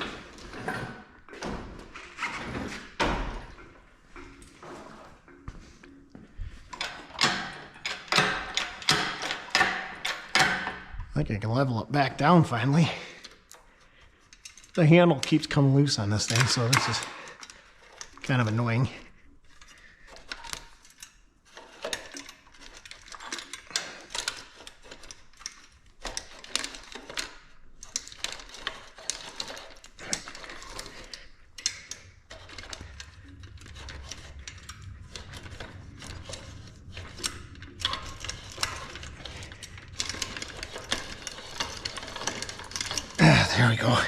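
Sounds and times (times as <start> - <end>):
metal clicks of hand hoist: 6.7 - 10.8, 19.4 - 43.2.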